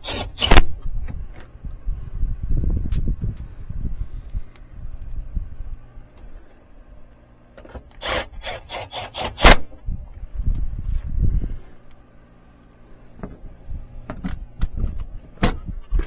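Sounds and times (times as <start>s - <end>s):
rasping scraping strokes: 0.0s - 0.7s, 7.7s - 9.7s
low handling noise: 9.4s - 16.0s.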